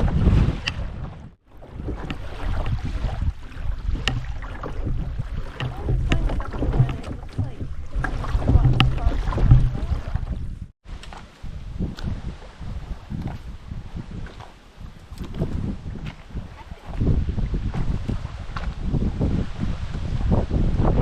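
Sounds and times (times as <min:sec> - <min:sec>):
paddle strokes in water: 0:00.0 - 0:20.5
wind rumble on microphone: 0:00.0 - 0:21.0.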